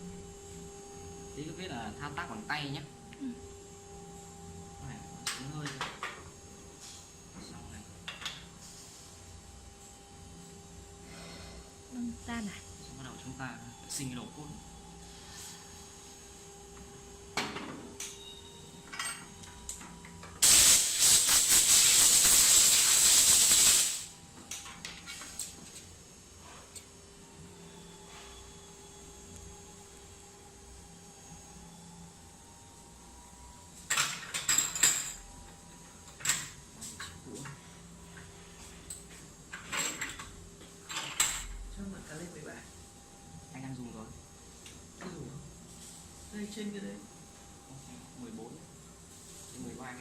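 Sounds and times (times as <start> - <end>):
pressurised spray hissing: 20.4 - 24.1.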